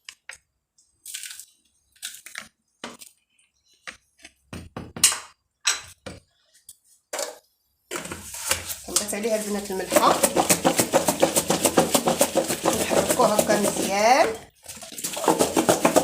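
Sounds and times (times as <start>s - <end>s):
salt rustling on olives: 8.0s - 16.0s.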